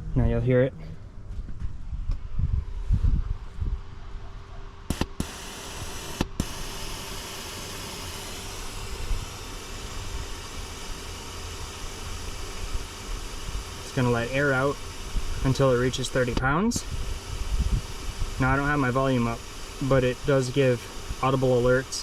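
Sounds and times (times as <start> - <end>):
air hissing from tyres: 4.9 - 22.0
sharp clicks: 4.9 - 22.0.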